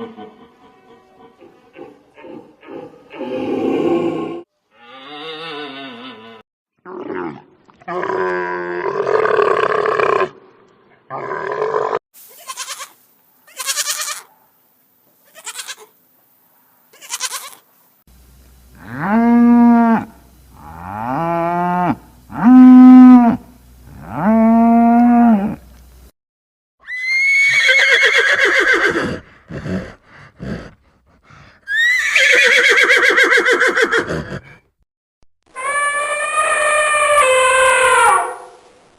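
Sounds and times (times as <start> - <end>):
long arching farm animal calls: 0.0 - 6.4, 8.0 - 14.5, 15.2 - 16.0, 16.9 - 17.7, 35.6 - 38.5
short high-pitched animal calls: 12.3 - 14.4, 15.2 - 16.0, 16.9 - 17.6, 35.5 - 38.6
long downward sliding calls: 35.6 - 38.6.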